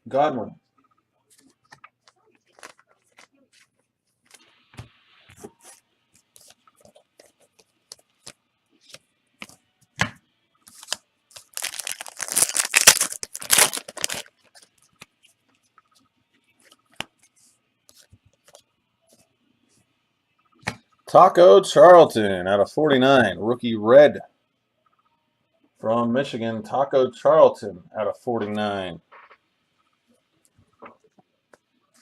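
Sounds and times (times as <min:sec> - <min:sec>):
card pack wrapper ripping: 0:10.7 - 0:14.3.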